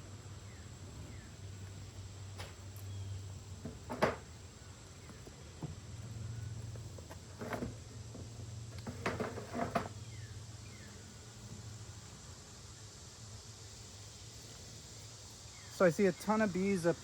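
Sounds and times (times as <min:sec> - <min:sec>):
wooden knocks of hive parts: 0:03.6 - 0:04.4, 0:05.0 - 0:10.0.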